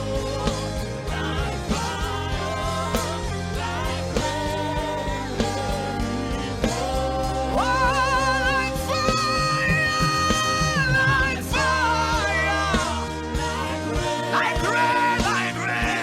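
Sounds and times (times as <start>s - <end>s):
steady held chords: 0.0s - 15.8s
gospel worship music: 0.0s - 16.0s.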